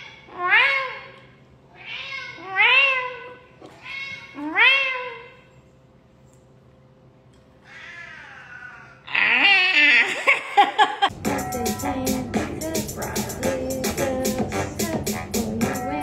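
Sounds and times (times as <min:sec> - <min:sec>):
cat meowing: 0:07.6 - 0:10.0.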